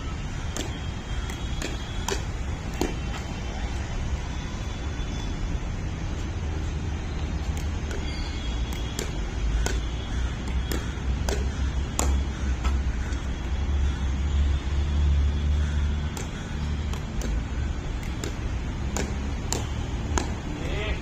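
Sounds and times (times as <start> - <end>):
steady low rumble: 0.0 - 4.6
paddles striking plastic ball: 0.5 - 3.3, 8.7 - 12.3, 18.0 - 20.5.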